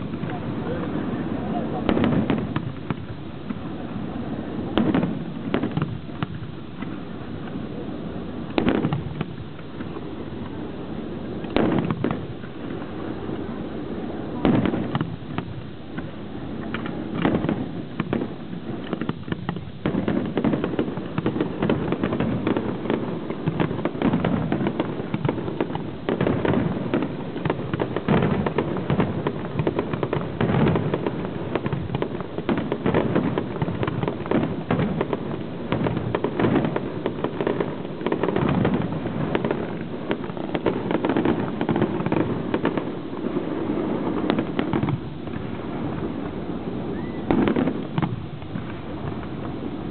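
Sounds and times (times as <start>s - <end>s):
fireworks bangs: 0.0s - 49.9s
fireworks crackling: 0.0s - 49.9s.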